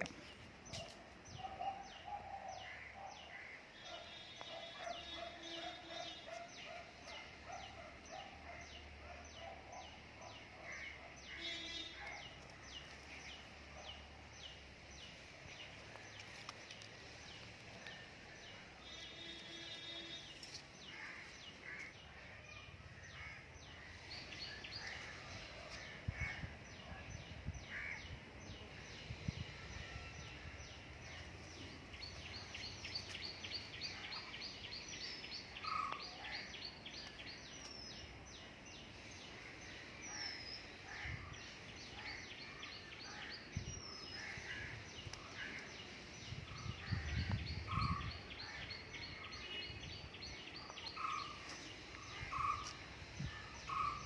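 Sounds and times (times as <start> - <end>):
outdoor background hiss: 0.0 - 54.0
birds chirping and calling: 30.2 - 38.1, 38.8 - 54.0.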